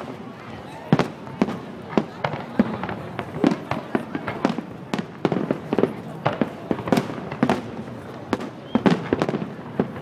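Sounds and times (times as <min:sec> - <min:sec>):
fireworks bangs: 0:00.0 - 0:10.0.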